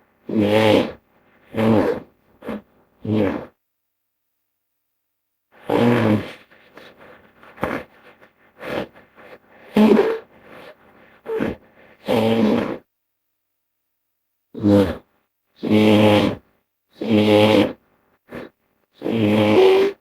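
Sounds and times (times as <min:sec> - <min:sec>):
long pitched animal calls: 0:19.0 - 0:20.0.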